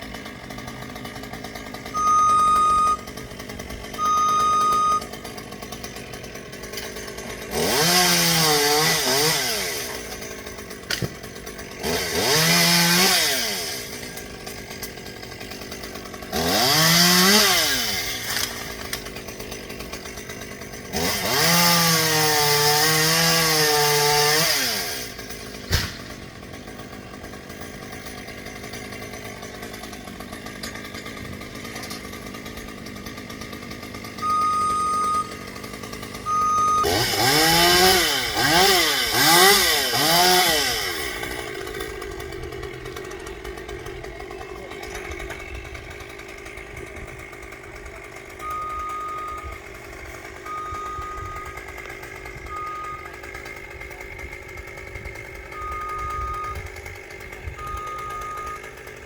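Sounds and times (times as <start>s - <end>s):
chainsaw idling and revving: 0.0s - 59.0s
steady high tone: 2.0s - 3.0s, 4.0s - 5.0s.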